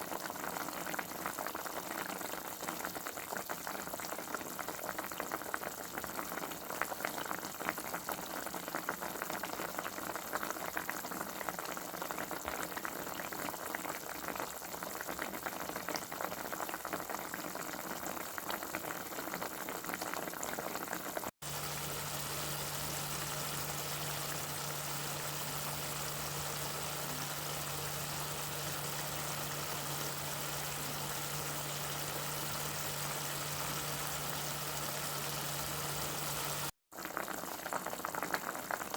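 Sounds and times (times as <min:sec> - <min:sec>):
liquid boiling in a pot: 0:00.0 - 0:38.9
smooth hiss: 0:21.4 - 0:36.7.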